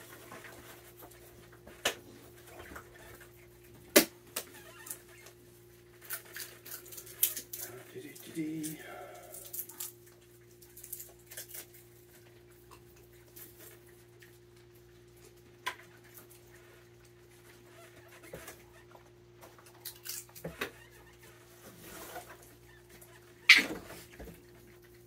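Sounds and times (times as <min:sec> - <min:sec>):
raccoons crunching peanut shells: 0:00.1 - 0:25.0
steady low hum: 0:05.1 - 0:17.8.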